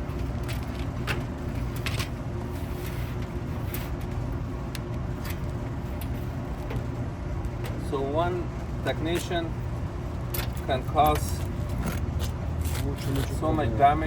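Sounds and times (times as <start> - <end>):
low machine hum: 0.0 - 14.0.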